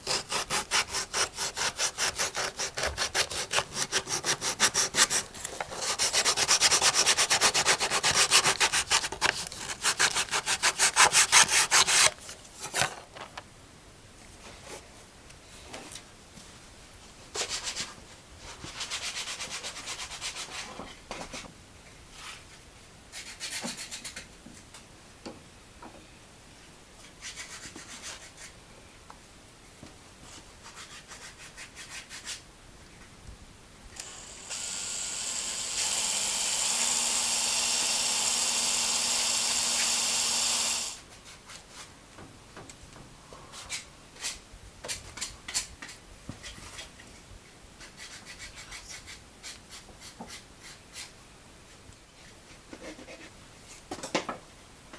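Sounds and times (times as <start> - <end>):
hand saw cutting wood: 0.0 - 12.2, 34.0 - 41.0.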